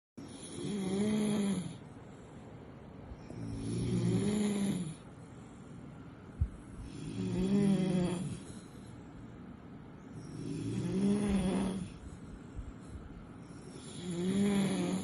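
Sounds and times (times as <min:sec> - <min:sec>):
puppy snoring: 0:00.2 - 0:01.9, 0:03.2 - 0:05.2, 0:06.5 - 0:09.1, 0:10.0 - 0:15.0.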